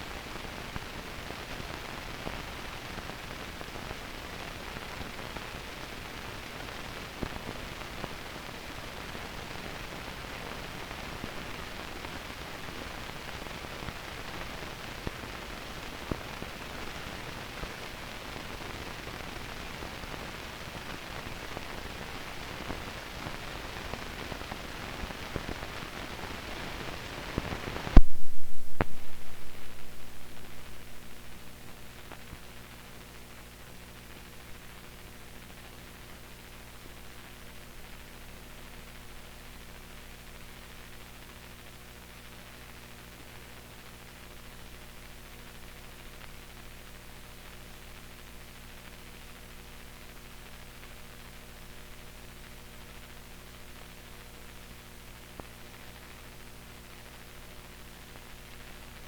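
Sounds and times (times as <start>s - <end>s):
film soundtrack hiss and crackle: 0.0s - 59.0s
low pulsing buzz: 28.0s - 31.9s.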